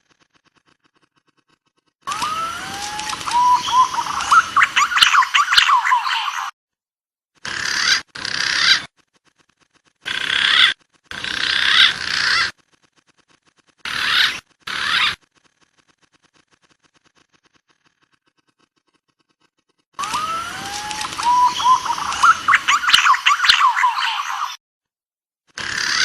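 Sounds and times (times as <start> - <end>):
rough chattering bird calls: 0.3 - 6.5, 7.4 - 18.7, 20.0 - 24.6
sharp bird chirps: 2.1 - 6.5, 20.0 - 24.6.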